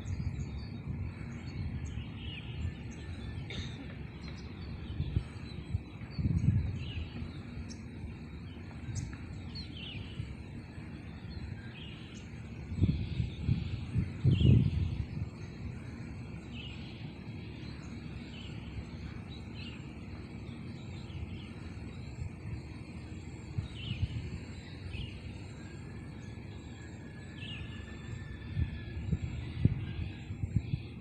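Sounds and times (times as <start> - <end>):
low rumble: 0.0 - 31.0
small birds chirping: 0.0 - 31.0.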